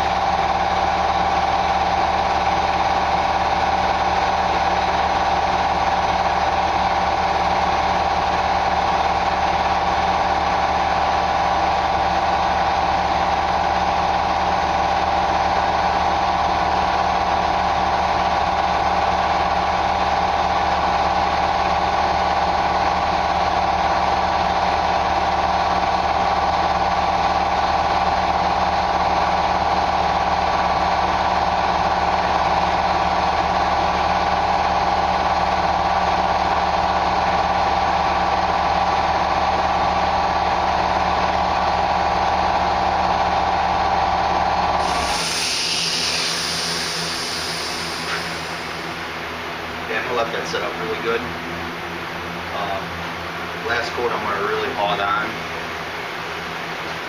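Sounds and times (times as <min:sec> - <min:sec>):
air compressor running: 0:00.0 - 0:57.0
hiss of air: 0:44.8 - 0:49.8.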